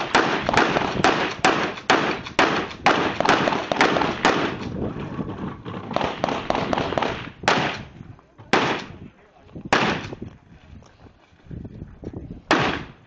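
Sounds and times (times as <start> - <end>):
gunshots with echo: 0.0 - 4.7, 5.9 - 7.9, 8.5 - 9.0, 9.7 - 10.1, 12.5 - 13.0.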